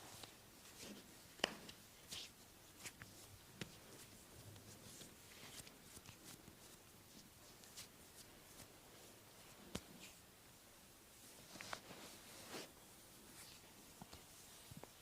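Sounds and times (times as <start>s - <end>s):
hands tapping and rubbing skin: 0.2s - 8.8s, 9.5s - 10.2s.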